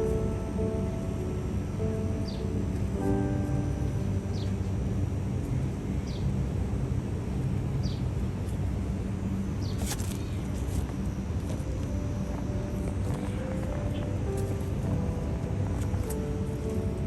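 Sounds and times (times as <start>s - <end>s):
low outdoor rumble: 0.0s - 17.0s.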